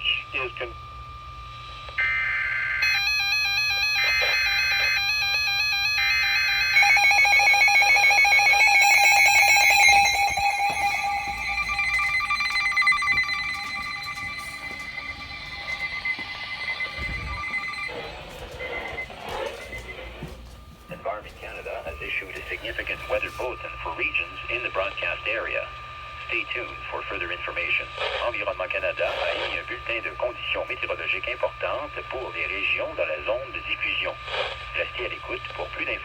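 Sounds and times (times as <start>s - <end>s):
warbling alarm tone: 1.4s - 23.7s
screeching digital header bursts: 2.0s - 19.4s
steady tone: 2.0s - 23.6s.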